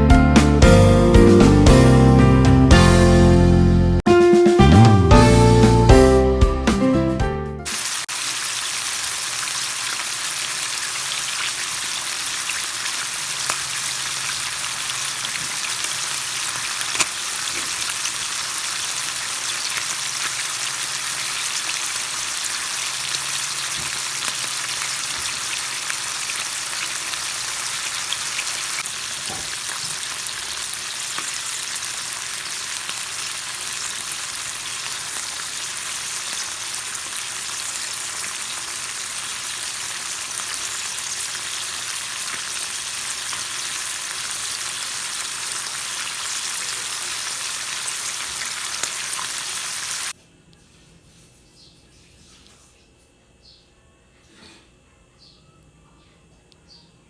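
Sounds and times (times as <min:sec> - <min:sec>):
food sizzling in hot oil: 0:07.7 - 0:50.2.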